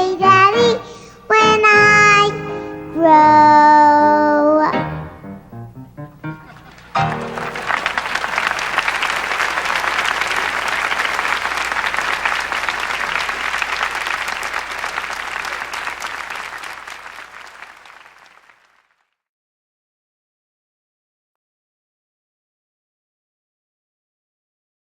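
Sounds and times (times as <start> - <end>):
audience applauding: 6.5 - 19.0.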